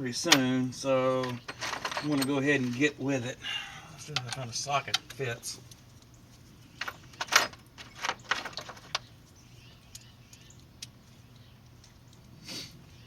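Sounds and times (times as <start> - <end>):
metal sockets clinking: 0.2 - 2.9, 6.8 - 9.1.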